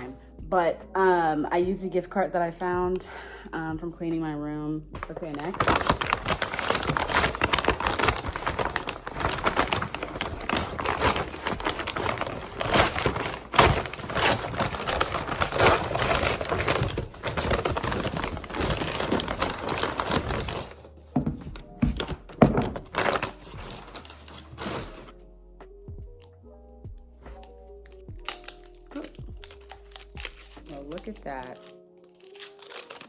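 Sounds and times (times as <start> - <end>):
plastic packaging crinkling: 5.0 - 25.1, 27.3 - 33.0.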